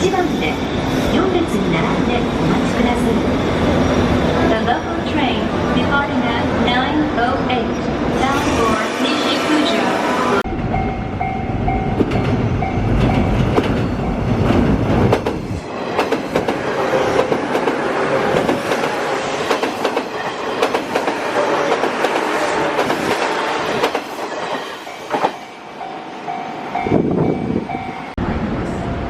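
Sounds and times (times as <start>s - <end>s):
heavy low train rumble: 0.0s - 29.0s
wheels squealing on rail: 3.0s - 5.8s
train wheels clattering over rails: 11.9s - 25.5s.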